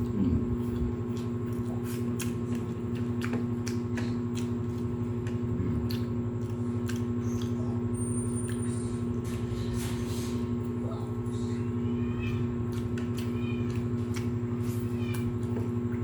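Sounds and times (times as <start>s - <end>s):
chewing: 0.0s - 16.0s
steady mechanical hum: 0.0s - 16.0s
wet clicks and smacks: 1.2s - 7.6s, 12.7s - 14.5s.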